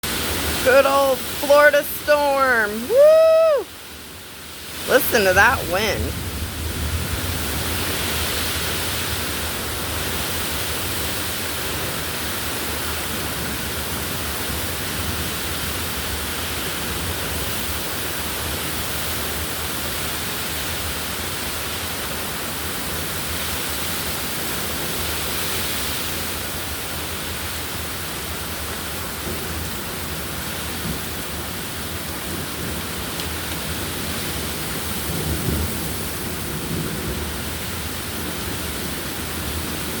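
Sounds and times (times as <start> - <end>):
wind and rain rushing: 0.0 - 40.0.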